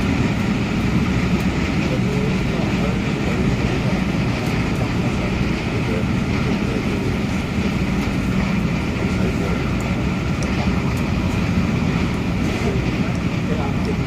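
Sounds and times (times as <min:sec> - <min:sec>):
train motors and wheels rumbling: 0:00.0 - 0:14.0.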